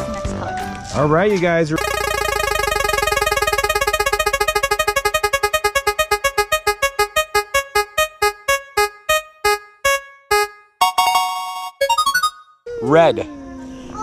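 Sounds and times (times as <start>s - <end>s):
electronic spinning wheel ticks: 1.8s - 11.2s.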